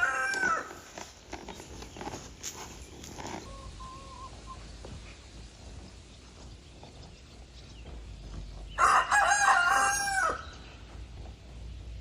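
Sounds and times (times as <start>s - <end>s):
rooster crowing: 0.0s - 0.8s, 8.8s - 10.5s.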